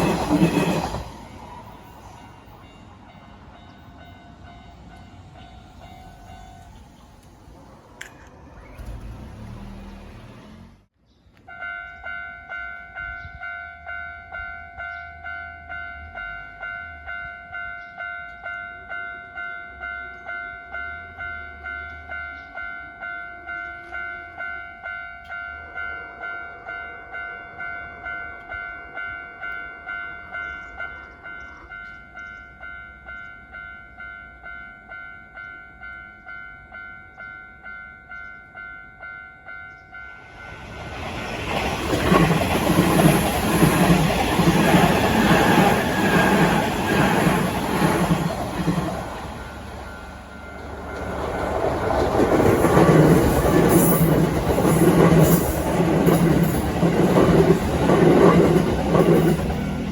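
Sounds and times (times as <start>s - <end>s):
train running noise: 0.0s - 59.9s
electronic level-crossing bell: 49.4s - 51.5s.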